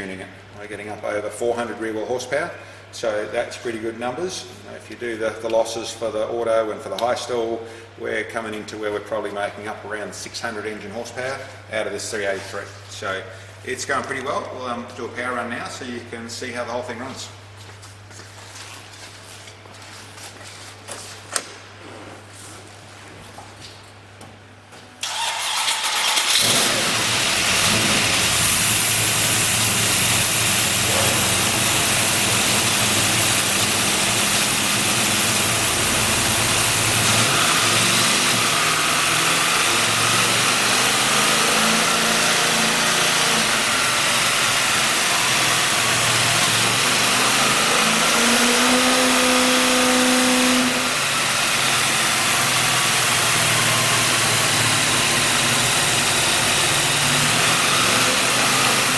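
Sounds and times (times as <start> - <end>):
car engine running hard: 25.0 - 58.9.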